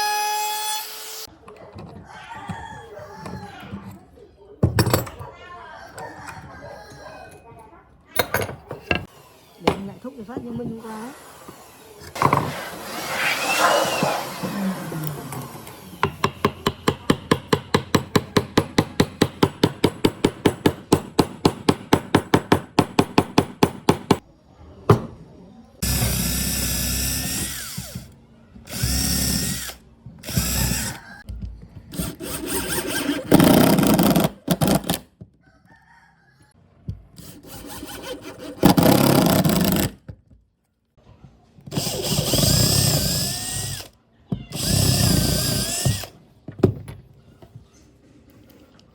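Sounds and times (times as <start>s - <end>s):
electric drill whining: 25.8s - 28.1s, 28.7s - 31.0s, 41.7s - 43.9s, 44.5s - 46.1s.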